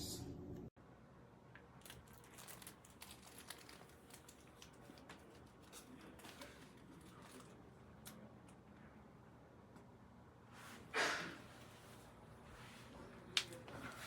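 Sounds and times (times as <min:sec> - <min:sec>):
crinkling rustles: 0:01.8 - 0:08.2.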